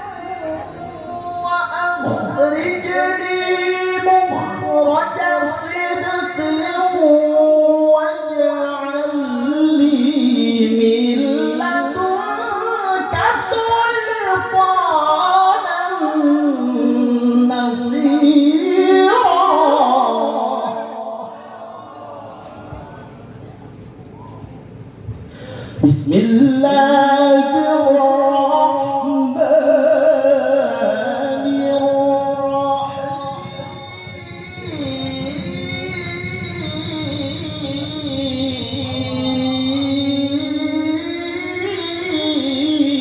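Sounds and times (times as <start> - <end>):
person reciting in melodic chant: 0.0 - 23.1, 25.7 - 43.0.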